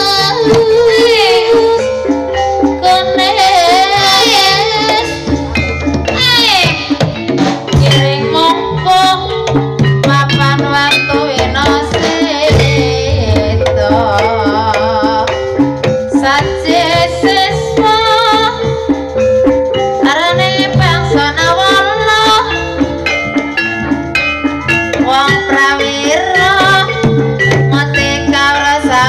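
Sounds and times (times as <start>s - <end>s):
held metallophone tones: 0.9s - 29.0s
hand drum strokes: 11.4s - 17.5s.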